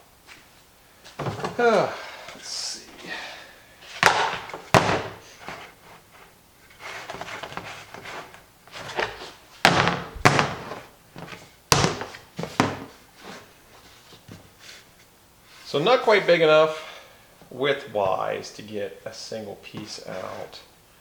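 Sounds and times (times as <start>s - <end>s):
scraping and rustling: 3.8s - 15.8s
hard objects knocking: 4.0s - 5.6s, 8.8s - 12.9s.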